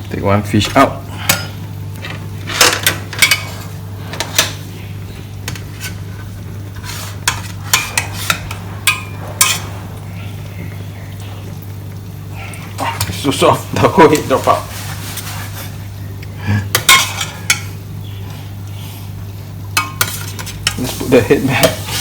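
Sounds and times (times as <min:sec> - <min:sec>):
steady low hum: 0:00.0 - 0:22.0
metal utensils clinking on pot: 0:00.6 - 0:04.6, 0:07.2 - 0:09.8, 0:16.7 - 0:17.8, 0:19.8 - 0:20.9.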